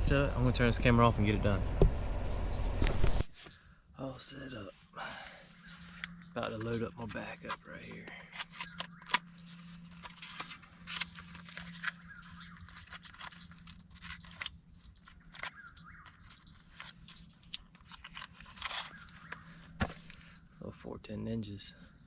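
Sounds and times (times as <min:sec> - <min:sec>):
faint low hum: 0:00.0 - 0:22.0
gear rustling: 0:05.5 - 0:20.5
shotgun action clicks and knocks: 0:07.4 - 0:09.9.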